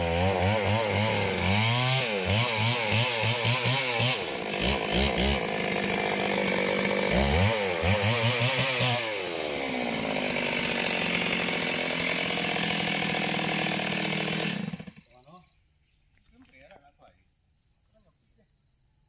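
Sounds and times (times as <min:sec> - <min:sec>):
chainsaw engine revving: 0:00.0 - 0:15.2.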